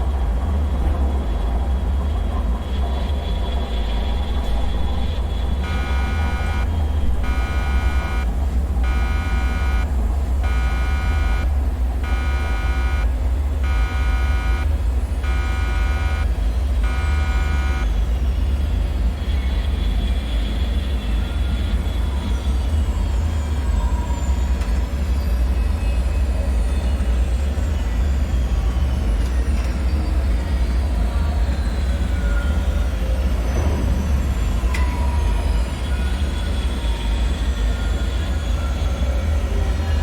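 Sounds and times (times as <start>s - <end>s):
pulsing buzzing alarm tone: 5.4s - 18.1s.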